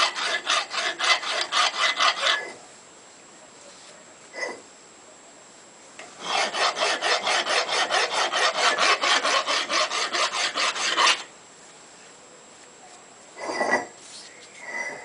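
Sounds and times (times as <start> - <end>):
hand file rasping on steel: 0.0 - 2.6, 6.2 - 11.3.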